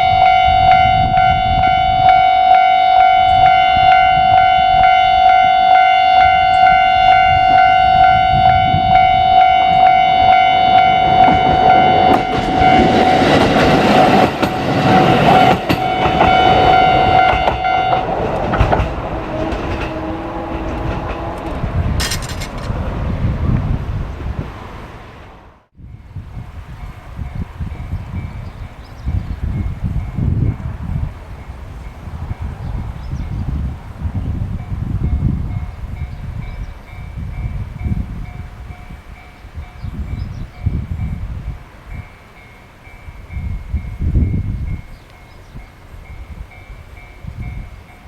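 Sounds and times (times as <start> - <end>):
level-crossing alarm ringing: 0.0 - 18.6
train clattering past: 0.0 - 48.0.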